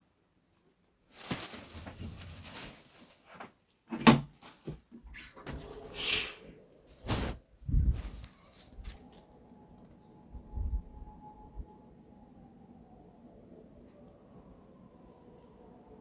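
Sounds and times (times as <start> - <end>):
short rush of hiss: 5.8 - 8.3
faint steady tone: 7.8 - 16.0.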